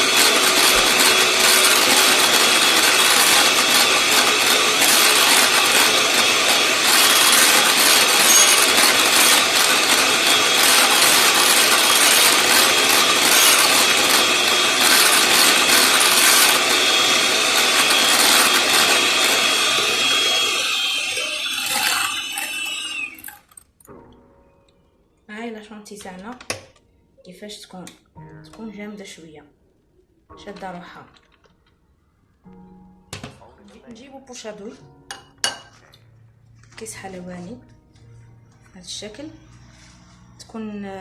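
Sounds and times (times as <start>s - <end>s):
electric mixer whining: 0.0s - 23.6s.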